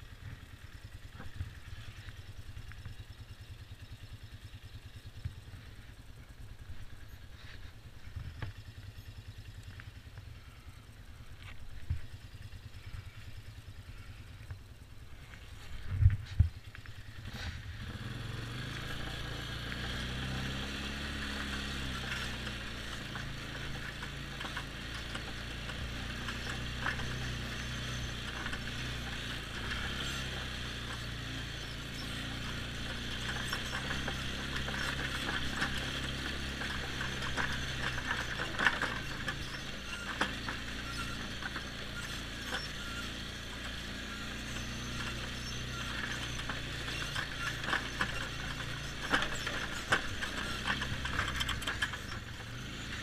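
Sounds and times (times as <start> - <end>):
atv engine running: 0.0 - 53.0
small knocks and rattles: 44.7 - 52.6.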